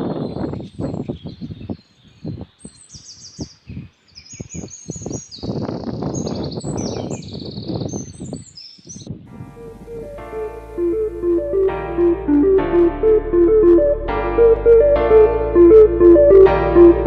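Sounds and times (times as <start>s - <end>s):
small birds chirping: 0.0s - 11.6s.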